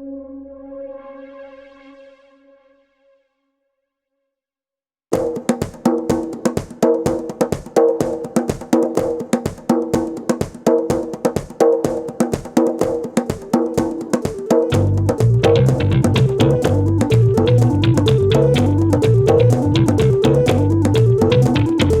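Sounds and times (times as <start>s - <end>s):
wood-block-like percussive hits: 5.1s - 22.0s
repeating pitched notes: 14.0s - 22.0s.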